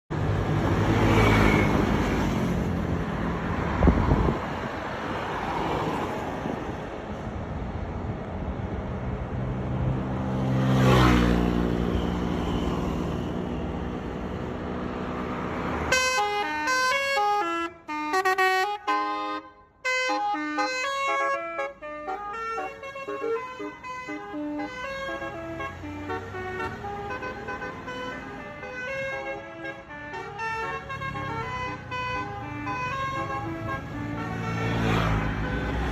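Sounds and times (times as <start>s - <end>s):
heavy vehicles passing: 0.1s - 35.9s
musical horn melody: 15.8s - 35.8s.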